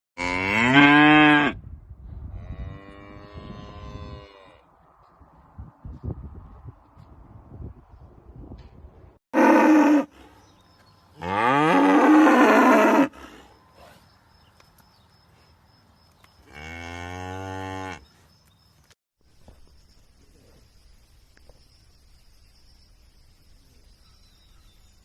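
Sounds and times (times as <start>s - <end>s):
cow mooing: 9.4s - 10.1s, 11.2s - 13.2s.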